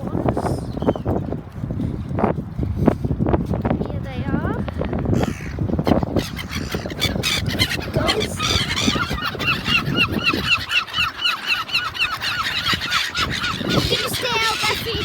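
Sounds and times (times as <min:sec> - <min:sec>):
waterbird honking: 0:05.1 - 0:15.0.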